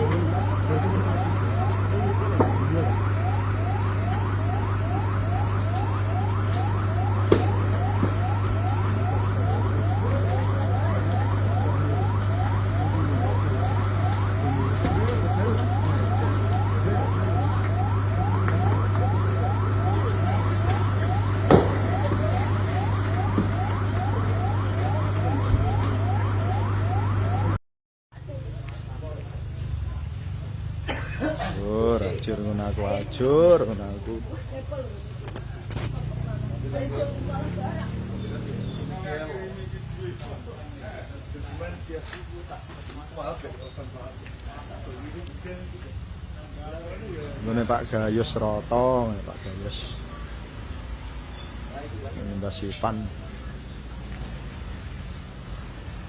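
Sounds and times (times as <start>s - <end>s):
siren yelping: 0.0s - 27.6s, 36.7s - 39.5s.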